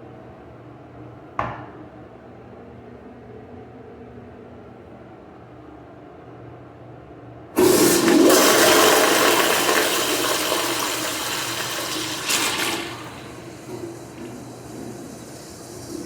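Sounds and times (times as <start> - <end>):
toilet flushing: 7.6 - 16.0.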